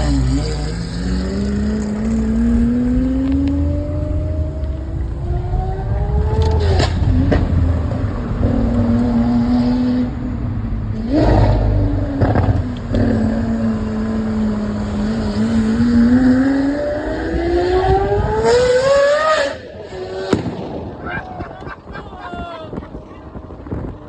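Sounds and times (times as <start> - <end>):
car engine revving: 0.0 - 20.7.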